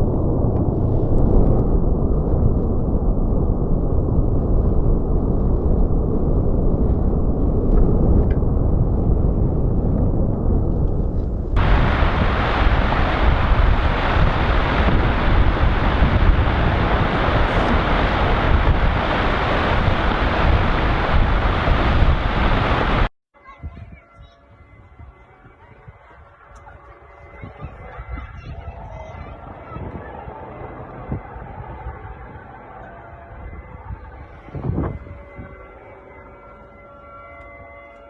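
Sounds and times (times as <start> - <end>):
loud low rumbling: 0.0 - 23.1, 27.1 - 37.1
hissy roar: 11.6 - 23.0.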